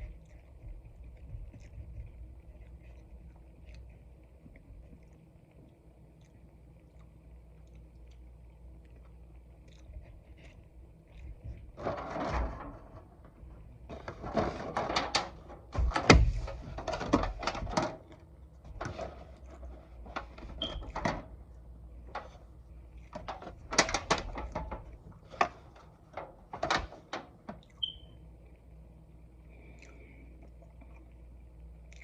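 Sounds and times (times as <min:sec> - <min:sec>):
chewing: 0:00.0 - 0:11.8, 0:29.5 - 0:32.0.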